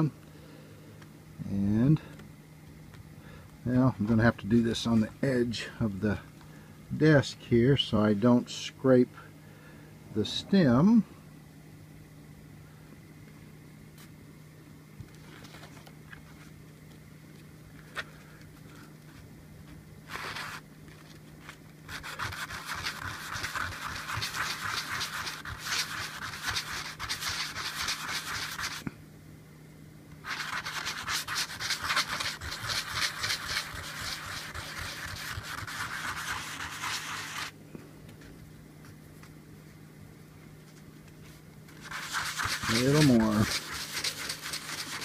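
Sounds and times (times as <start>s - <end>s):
pipe scratching on sandpaper: 20.1s - 20.6s, 21.9s - 28.8s, 30.2s - 37.5s, 41.8s - 45.0s.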